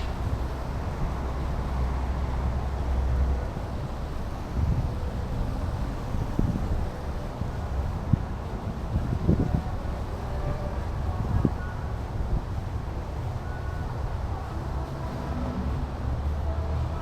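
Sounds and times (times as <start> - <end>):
steady background hiss: 0.0 - 17.0
wind buffeting microphone: 0.0 - 17.0.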